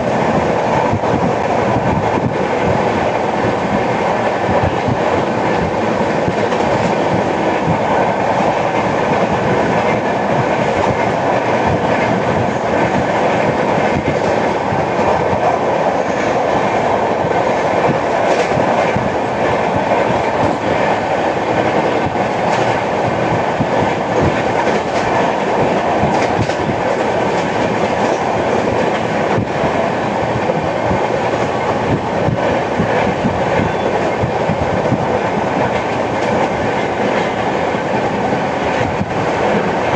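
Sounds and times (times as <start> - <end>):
train rumble and rattle: 0.0 - 39.9
wheel clicks on rails: 24.2 - 29.4.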